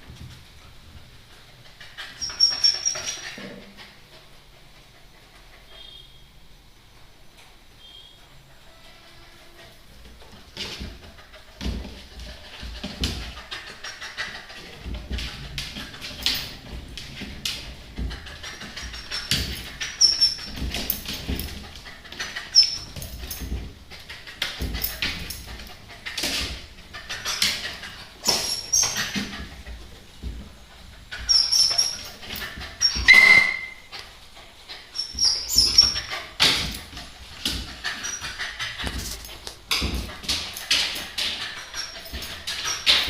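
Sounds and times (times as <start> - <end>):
dog squeaks: 2.0 - 3.4, 18.4 - 21.0, 22.1 - 23.5, 27.0 - 29.4, 31.1 - 33.9, 34.9 - 36.8, 37.7 - 39.2.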